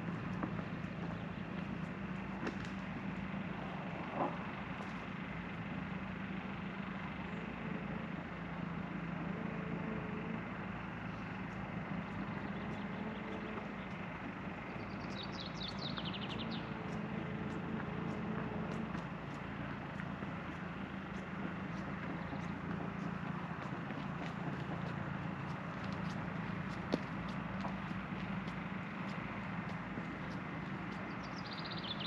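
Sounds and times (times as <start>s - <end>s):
low mechanical hum: 0.0s - 32.0s
bird trill: 31.0s - 32.0s.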